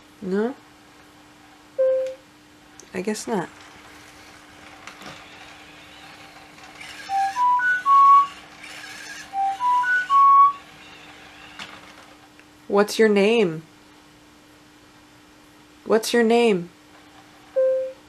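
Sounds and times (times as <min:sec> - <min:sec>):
robot dog electronic tone melody: 0:09.4 - 0:10.6.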